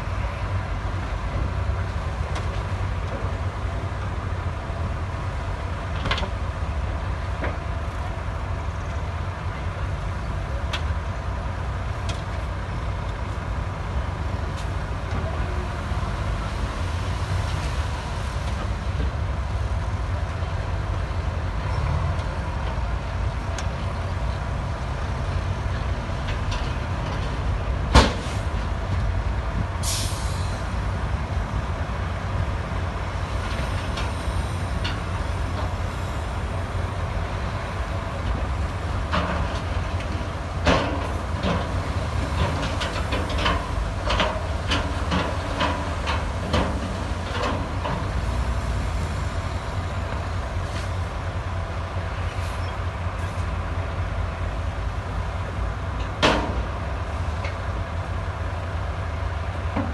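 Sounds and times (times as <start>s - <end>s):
diesel machinery rumbling: 0.0s - 59.9s
hiss of air: 29.8s - 30.8s.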